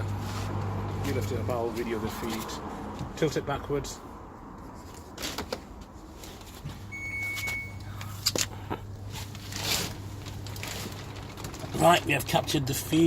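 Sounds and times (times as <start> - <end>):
low steady hum: 6.7 - 13.0
short high beep: 6.9 - 7.8.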